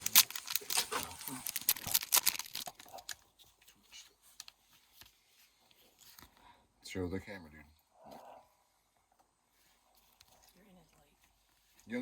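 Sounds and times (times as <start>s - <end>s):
wrapper tearing and crinkling: 0.0s - 3.2s.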